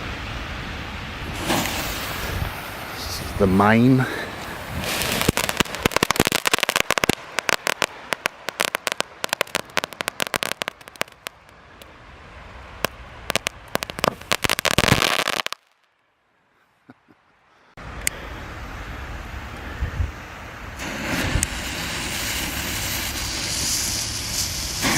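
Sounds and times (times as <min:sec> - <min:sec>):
wind noise: 0:00.0 - 0:11.2, 0:12.8 - 0:15.5, 0:19.6 - 0:24.9
firework hissing surge: 0:01.2 - 0:11.3, 0:13.3 - 0:15.6, 0:20.8 - 0:24.9
firework crackling pops: 0:01.3 - 0:03.7, 0:04.4 - 0:11.9, 0:12.8 - 0:15.9, 0:20.8 - 0:24.9.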